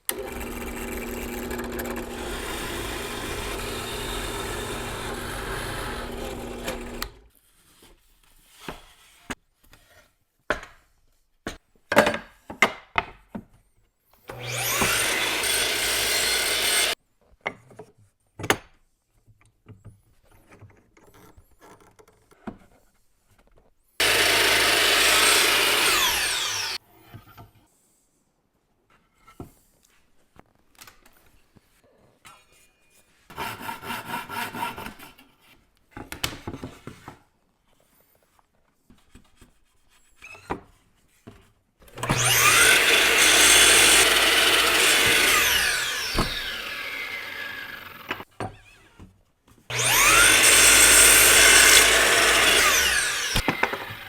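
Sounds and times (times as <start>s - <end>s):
power tools cutting wood: 0.0s - 7.3s, 14.2s - 17.0s, 24.0s - 26.8s, 41.9s - 48.8s, 49.7s - 54.0s.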